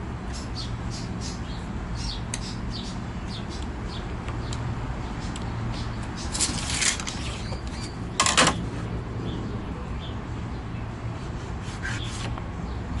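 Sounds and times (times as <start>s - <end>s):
steady low hum: 0.0s - 6.3s.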